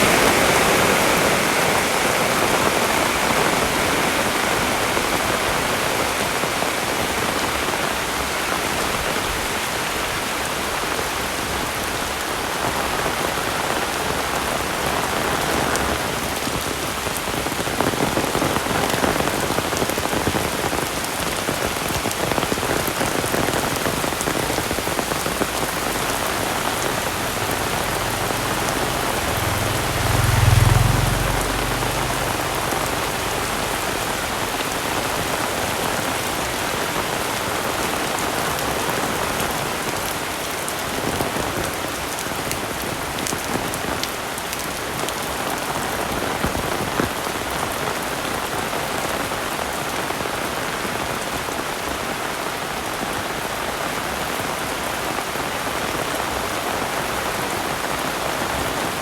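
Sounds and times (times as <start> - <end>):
heavy rain hissing: 0.0 - 59.0
low rumble: 26.0 - 34.4.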